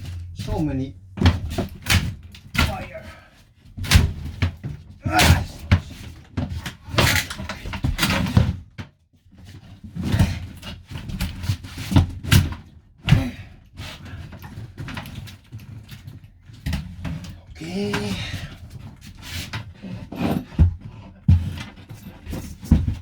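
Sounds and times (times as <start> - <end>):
knocks thuds and scraping: 0.0 - 3.2.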